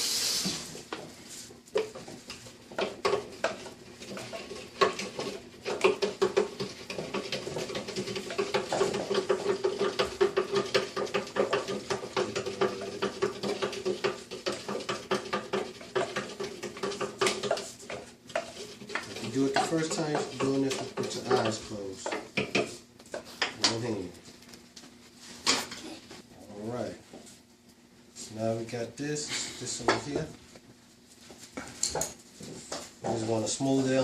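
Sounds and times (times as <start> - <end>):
utensil scraping a mixing bowl: 1.1 - 24.0.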